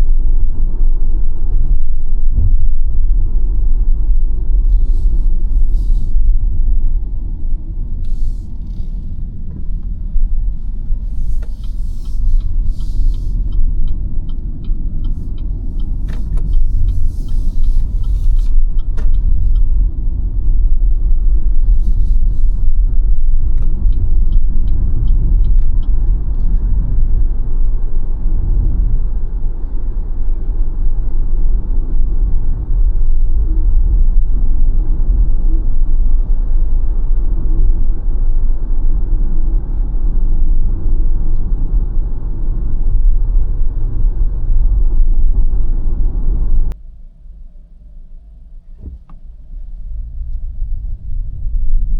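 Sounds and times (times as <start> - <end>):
road and tyre rumble: 0.0 - 51.9
light evenly spaced ticks: 8.0 - 20.1.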